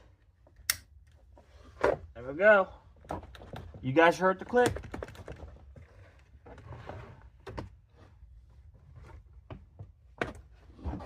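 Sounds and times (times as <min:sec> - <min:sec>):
plastic parts clicking and knocking: 0:04.4 - 0:05.7.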